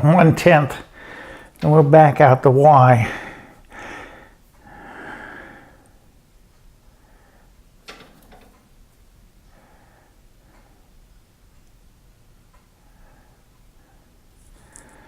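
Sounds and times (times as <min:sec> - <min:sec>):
quiet low hum: 0:00.0 - 0:15.0
soft breaths: 0:00.8 - 0:01.6, 0:03.0 - 0:06.2, 0:06.8 - 0:07.7, 0:09.4 - 0:11.2, 0:12.5 - 0:15.0.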